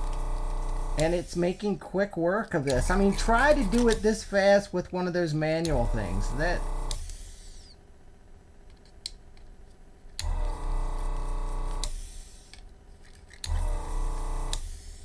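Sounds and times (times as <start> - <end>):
vacuum pump running: 0.0 - 1.9, 2.5 - 7.7, 10.2 - 12.6, 13.4 - 15.0.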